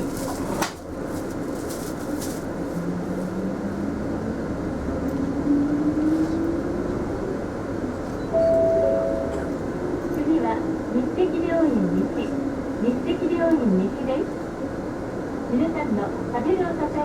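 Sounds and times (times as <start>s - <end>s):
bus whine rising in pitch: 8.3s - 10.2s.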